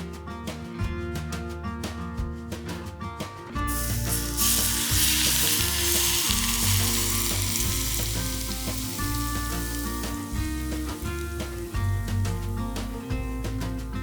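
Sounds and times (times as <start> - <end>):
background music: 0.0 - 14.0
hot oil sizzling: 3.7 - 14.0.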